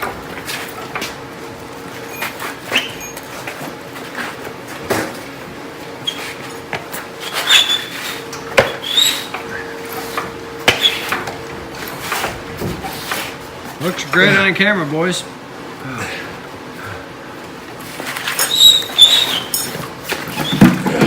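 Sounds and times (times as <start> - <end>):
bright metallic rings: 2.0 - 3.3
hand tools clanking on metal: 2.0 - 3.7, 18.0 - 21.0.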